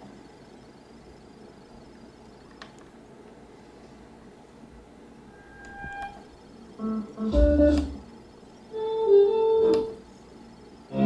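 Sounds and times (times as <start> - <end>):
low hum: 5.2 - 8.1.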